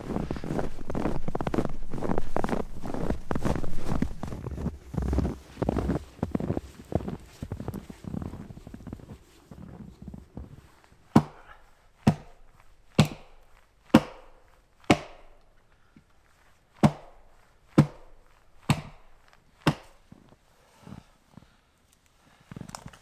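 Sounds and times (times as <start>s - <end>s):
wood being chopped: 11.1s - 15.5s, 16.8s - 20.0s.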